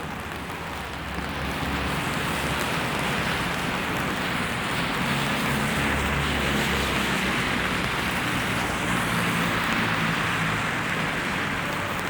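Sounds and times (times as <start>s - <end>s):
rain hissing on street: 0.0s - 12.0s.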